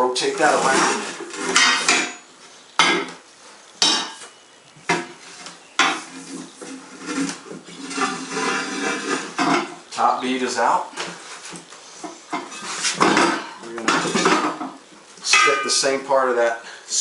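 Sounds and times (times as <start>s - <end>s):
metal scraping and rubbing: 0.0s - 2.2s, 4.9s - 10.0s, 11.2s - 14.7s
sharp metallic knocks: 2.8s - 3.2s, 3.8s - 4.3s, 12.4s - 15.8s.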